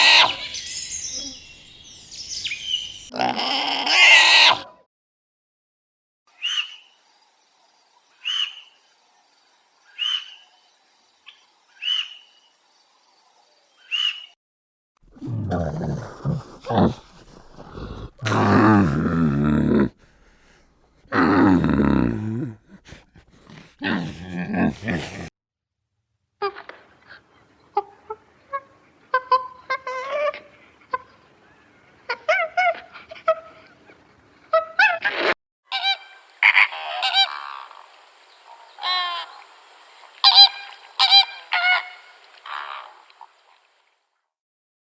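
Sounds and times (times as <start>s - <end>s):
geese honking: 0.0s - 1.7s, 35.7s - 43.2s
high-pitched animal call: 0.0s - 4.8s, 35.7s - 43.3s.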